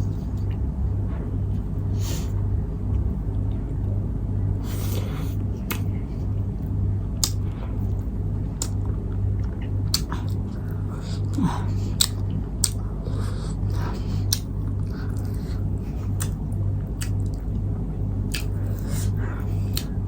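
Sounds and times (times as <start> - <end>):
steady low hum: 0.0 - 20.0
wet chewing and lip smacks: 5.7 - 5.9, 7.2 - 8.8, 9.4 - 17.6, 18.3 - 20.0.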